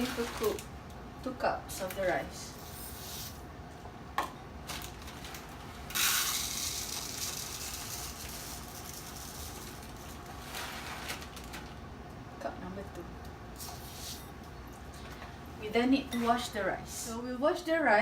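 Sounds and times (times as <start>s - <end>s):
rice grains pouring into cup: 5.9s - 11.0s.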